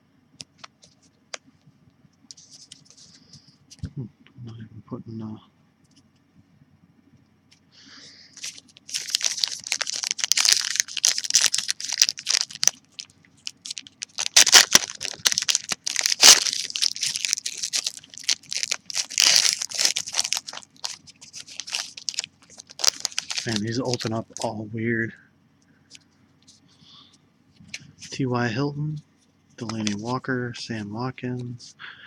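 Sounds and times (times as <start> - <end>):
wrapper tearing and crinkling: 8.4 - 24.5.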